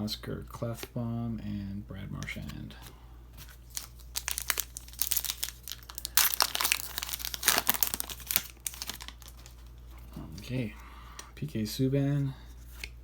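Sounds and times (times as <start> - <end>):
plastic wrapper crinkling: 3.7 - 10.0.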